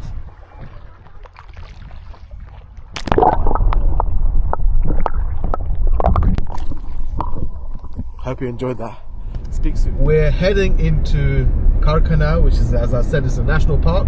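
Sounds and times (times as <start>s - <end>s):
water splashing and sloshing: 0.0s - 9.4s
low rumble: 0.0s - 14.0s.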